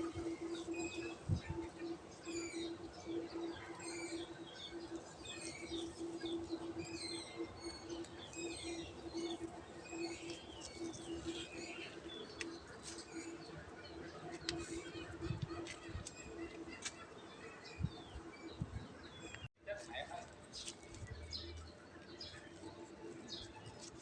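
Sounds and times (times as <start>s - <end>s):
pulsing low hum: 0.0s - 16.8s
small birds chirping: 0.0s - 24.0s.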